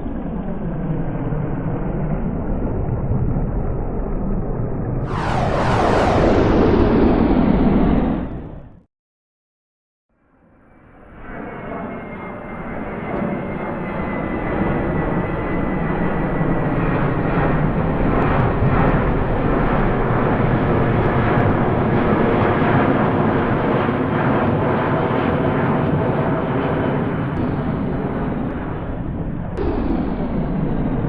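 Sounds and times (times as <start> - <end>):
jet engine roar: 0.0 - 8.9, 11.3 - 31.0
faint falling whine: 5.0 - 8.8.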